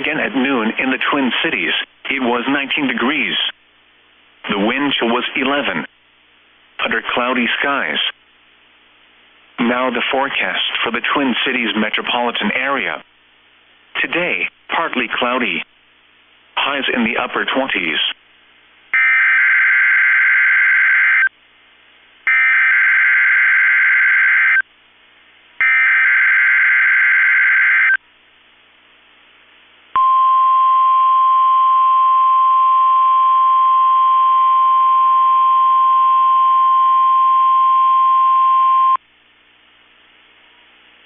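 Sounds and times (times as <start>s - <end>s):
steady alarm tone: 19.0s - 21.3s, 22.3s - 24.6s, 25.6s - 28.0s.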